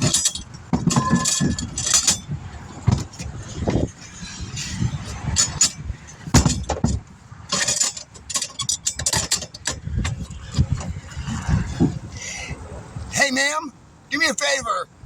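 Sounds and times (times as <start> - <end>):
metal tools clinking: 0.0 - 3.6, 4.2 - 10.9
passing highway traffic: 0.0 - 15.0.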